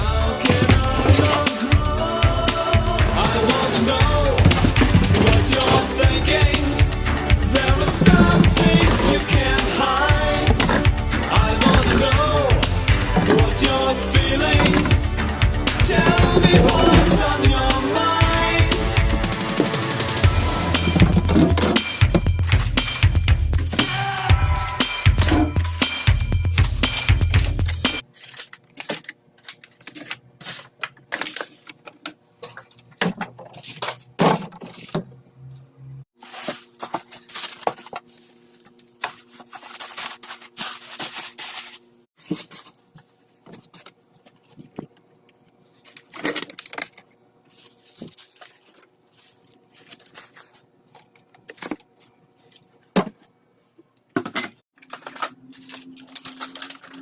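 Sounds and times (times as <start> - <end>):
objects clicking and knocking: 3.3 - 6.8, 7.6 - 9.4, 26.6 - 35.2, 42.2 - 47.2
rustling: 36.2 - 44.9, 45.6 - 50.7.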